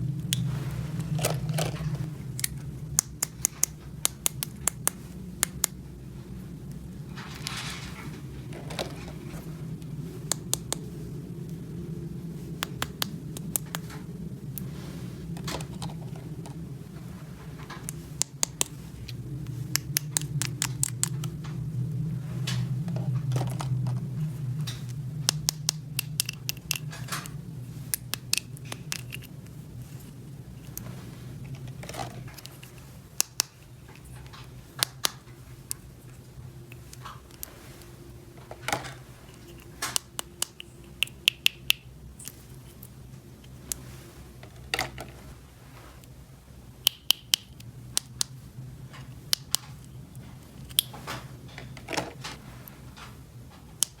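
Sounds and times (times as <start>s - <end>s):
steady low hum: 0.0s - 54.0s
plastic pieces scraping: 0.3s - 3.8s, 7.1s - 9.5s, 28.0s - 35.2s
plastic toy pieces clicking: 25.3s - 27.3s.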